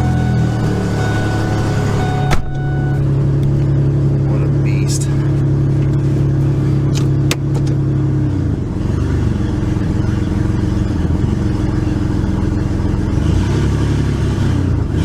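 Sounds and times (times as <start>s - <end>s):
truck engine idling: 0.0s - 13.1s.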